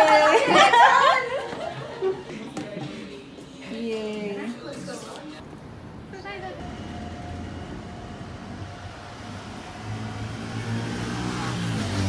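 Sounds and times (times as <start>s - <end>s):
vehicle engine running: 6.6s - 12.0s.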